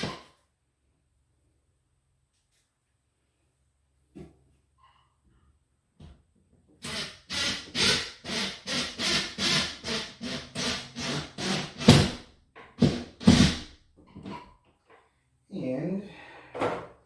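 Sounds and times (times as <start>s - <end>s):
impact driver bursts: 6.8s - 12.2s.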